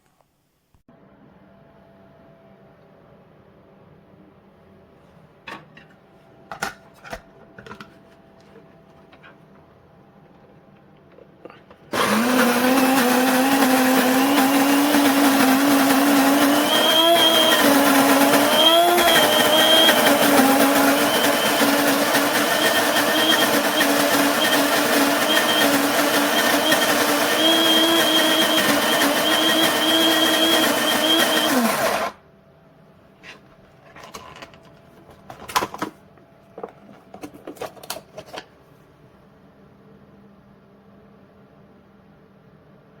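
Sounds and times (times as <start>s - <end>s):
coffee grinder running: 11.9s - 32.2s.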